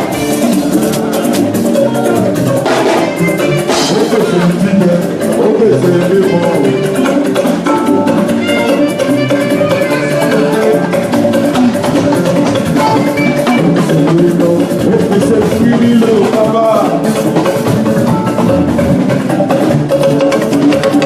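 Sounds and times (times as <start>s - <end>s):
live music with drums: 0.0s - 21.0s.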